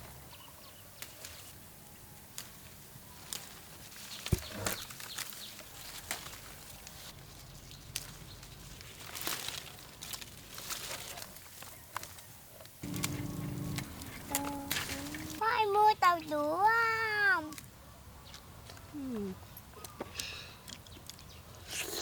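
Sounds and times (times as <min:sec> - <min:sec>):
rustling: 0:02.4 - 0:15.5.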